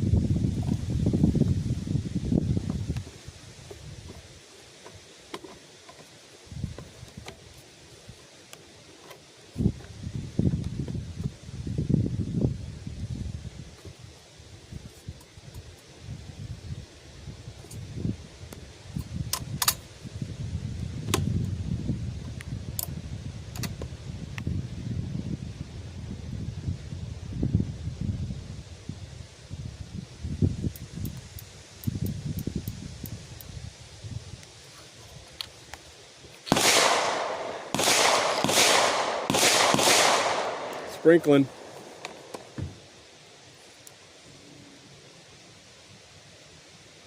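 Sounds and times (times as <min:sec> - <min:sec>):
wind rumble on microphone: 0:00.0 - 0:04.4, 0:06.5 - 0:08.2, 0:09.5 - 0:35.9
rifle shots echoing: 0:36.5 - 0:42.3.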